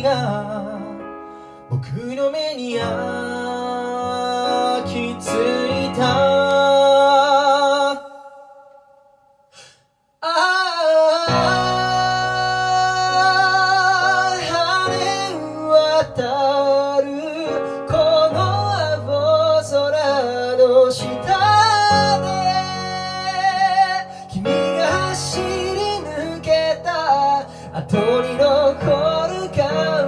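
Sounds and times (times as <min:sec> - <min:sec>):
wordless high singing: 0:10.2 - 0:30.0.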